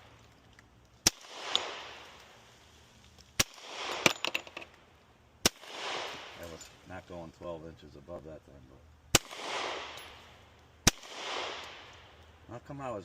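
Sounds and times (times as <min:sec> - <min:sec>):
gunshots with rolling echo: 0:01.0 - 0:02.2, 0:03.4 - 0:04.4, 0:05.4 - 0:06.5, 0:09.1 - 0:12.2.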